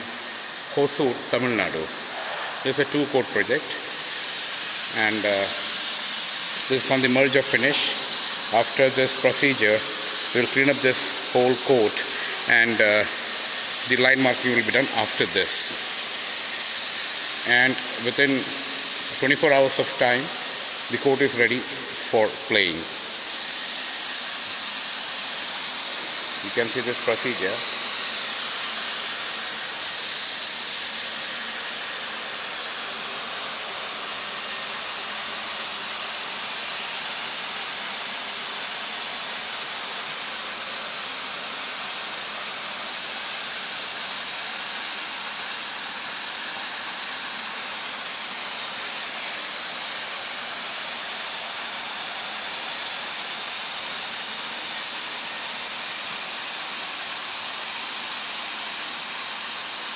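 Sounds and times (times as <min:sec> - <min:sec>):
hot-air welding machine hissing: 0:00.0 - 0:59.9.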